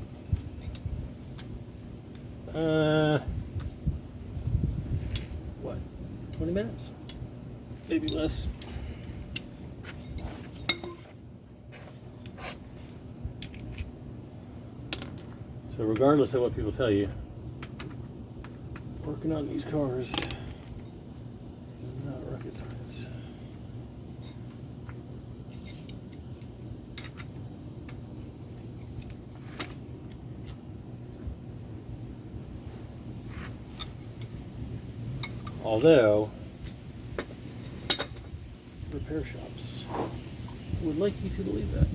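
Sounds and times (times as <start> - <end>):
light metallic clicks and clinks: 8.0 - 11.1, 35.2 - 36.0, 37.6 - 38.3
low hum: 16.4 - 38.9.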